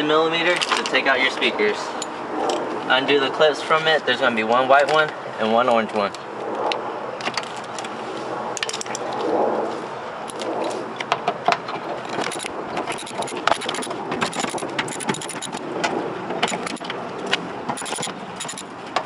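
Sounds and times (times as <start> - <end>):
tools clicking and tapping: 11.5 - 15.6, 16.4 - 19.0.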